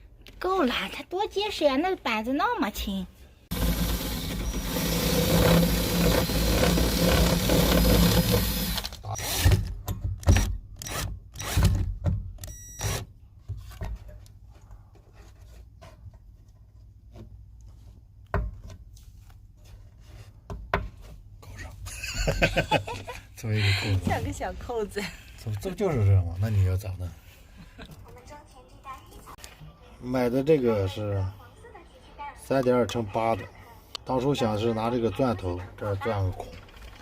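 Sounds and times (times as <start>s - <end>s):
power drill running: 3.5s - 9.6s.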